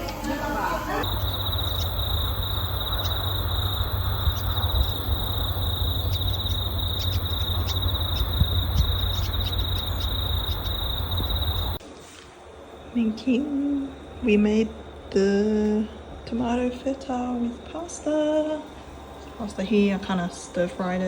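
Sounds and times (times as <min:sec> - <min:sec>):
low steady rumble: 0:00.0 - 0:11.8
insects trilling: 0:01.0 - 0:11.8.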